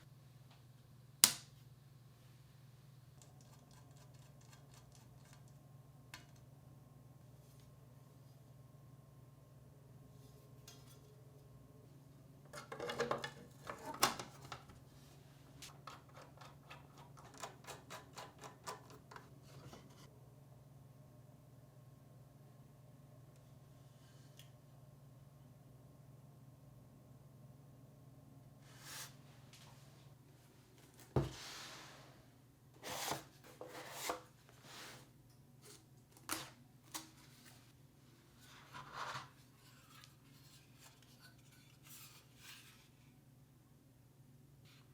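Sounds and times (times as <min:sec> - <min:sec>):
low steady hum: 0:00.0 - 0:44.9
rustling scrape: 0:31.3 - 0:35.8, 0:38.3 - 0:43.0.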